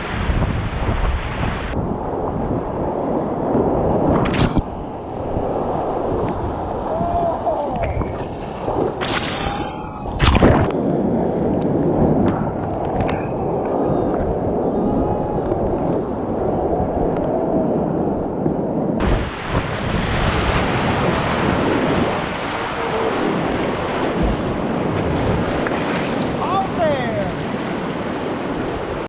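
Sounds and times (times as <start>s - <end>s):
wind on microphone: 0.0s - 29.0s
rushing whitewater: 19.0s - 29.0s.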